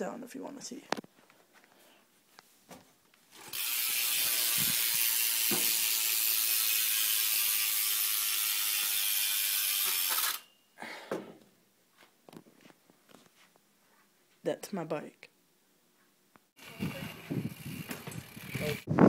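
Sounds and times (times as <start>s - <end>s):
bike hub freewheel buzzing: 3.4s - 10.5s, 16.6s - 19.0s.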